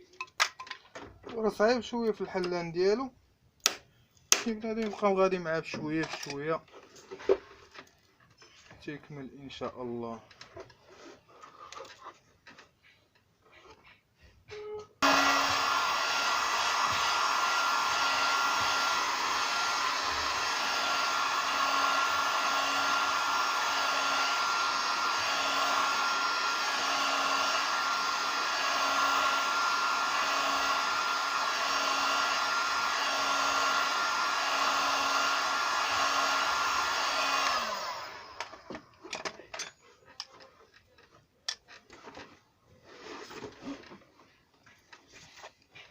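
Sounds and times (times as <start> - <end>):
heat gun blowing with a hum: 15.0 - 38.8.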